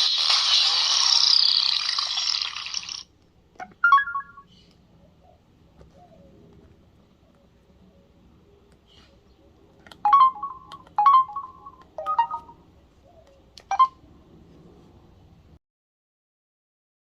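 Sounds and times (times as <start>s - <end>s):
cell phone ringtone melody: 3.8s - 4.5s, 10.1s - 12.7s, 13.7s - 14.0s.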